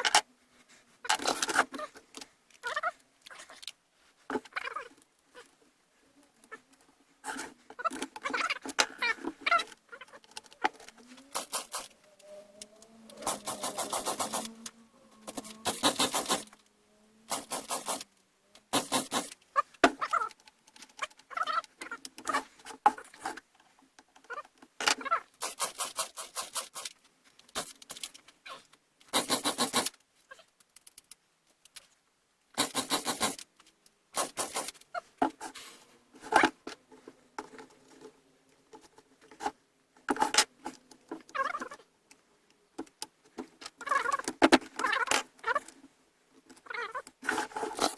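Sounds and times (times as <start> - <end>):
chainsaw pull-start rope whirr: 11.2 - 12.0, 12.8 - 16.5, 17.3 - 18.1.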